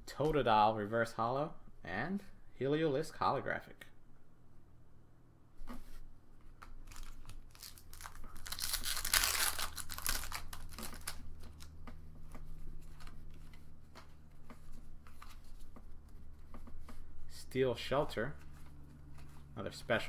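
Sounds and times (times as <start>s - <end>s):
trading cards clicking and rustling: 6.6s - 17.0s
foil wrapper tearing and crinkling: 6.8s - 11.8s.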